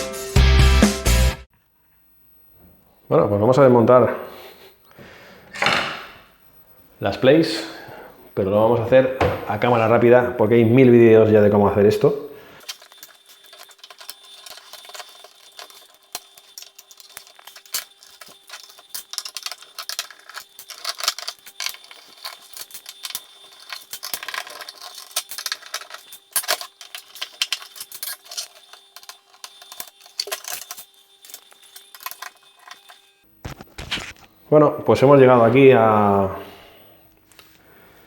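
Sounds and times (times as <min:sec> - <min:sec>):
screwdriver and plastic parts clattering: 0:12.6 - 0:33.0.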